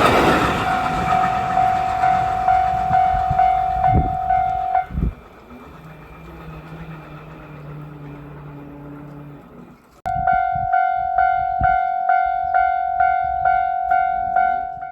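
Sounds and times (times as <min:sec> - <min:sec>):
railroad crossing bell ringing: 0:00.0 - 0:05.2, 0:10.1 - 0:14.9.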